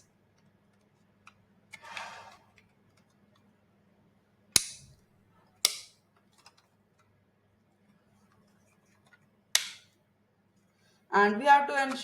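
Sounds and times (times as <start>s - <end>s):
brief scrape: 1.8s - 2.5s
plastic gear snapping clicks: 4.6s - 4.9s.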